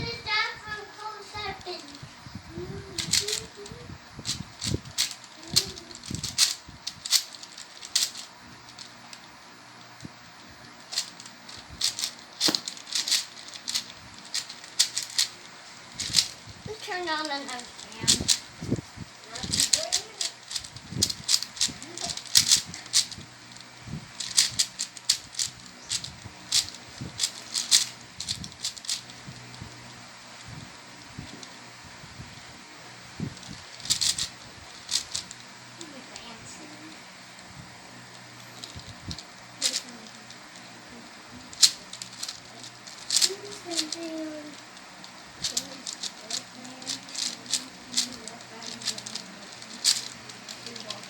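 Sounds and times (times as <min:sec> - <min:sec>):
child vocal sounds: 0:00.0 - 0:04.0
puzzle cube clicking as turned: 0:02.9 - 0:09.2, 0:10.8 - 0:16.4, 0:17.2 - 0:18.5, 0:19.3 - 0:23.6, 0:24.2 - 0:29.5, 0:33.4 - 0:36.0, 0:38.6 - 0:40.7, 0:41.4 - 0:44.6, 0:45.4 - 0:51.0.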